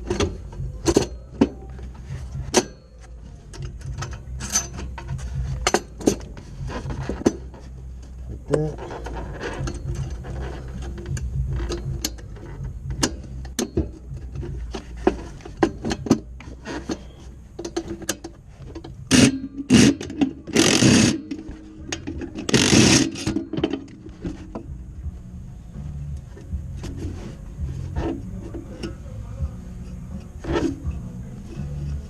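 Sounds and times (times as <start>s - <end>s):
tool rasping: 14.2s - 23.5s.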